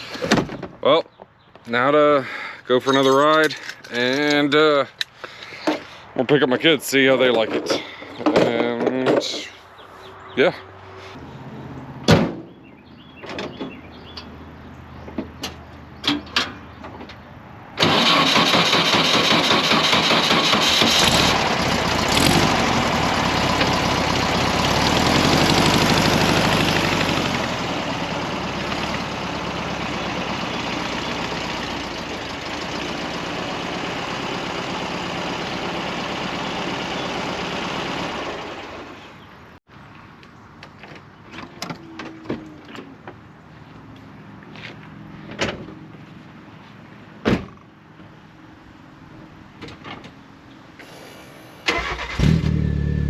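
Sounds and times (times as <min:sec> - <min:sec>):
car engine starting and idling: 0:17.8 - 0:39.3, 0:50.8 - 0:53.0.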